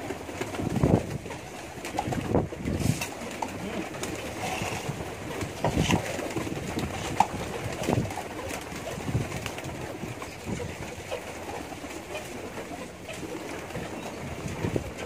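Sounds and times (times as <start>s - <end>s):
pigeons cooing: 0.0s - 15.0s.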